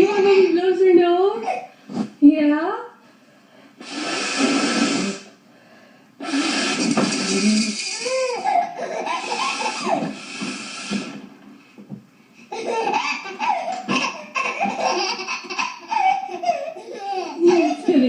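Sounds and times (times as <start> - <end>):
woman blowing her nose: 3.8 - 5.4, 6.2 - 8.2, 9.2 - 11.3
baby vocalizing: 6.2 - 11.2, 12.5 - 18.0.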